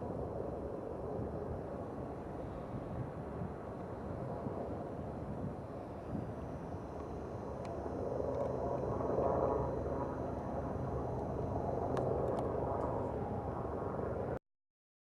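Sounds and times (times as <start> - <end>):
faint clicks: 11.2 - 13.1.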